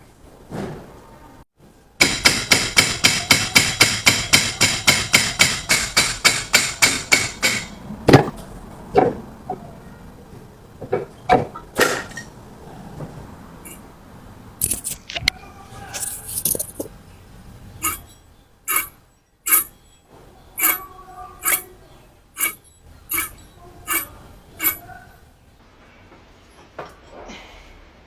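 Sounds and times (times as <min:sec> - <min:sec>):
hammer striking metal: 0:02.0 - 0:07.8, 0:17.8 - 0:20.0, 0:20.6 - 0:21.8, 0:22.4 - 0:24.9
tools clanking: 0:15.9 - 0:17.0, 0:17.8 - 0:20.0, 0:20.6 - 0:21.8, 0:22.4 - 0:25.0.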